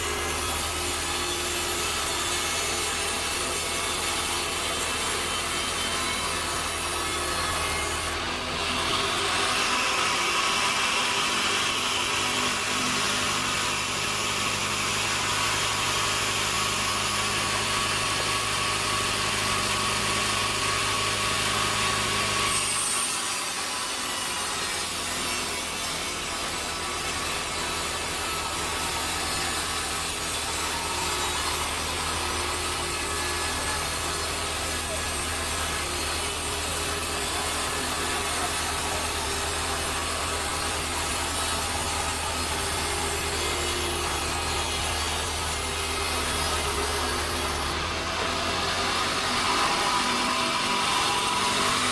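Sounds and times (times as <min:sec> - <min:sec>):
saw cutting through a log: 0:00.0 - 0:51.9.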